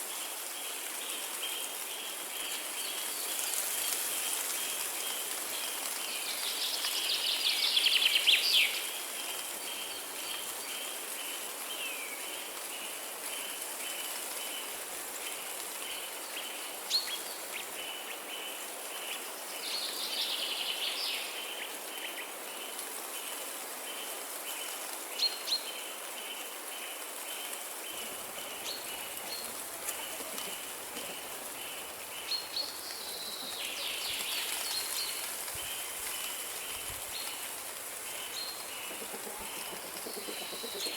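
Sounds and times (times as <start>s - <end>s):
steady hiss like rain: 0.0s - 40.9s
birds warbling: 38.6s - 40.9s.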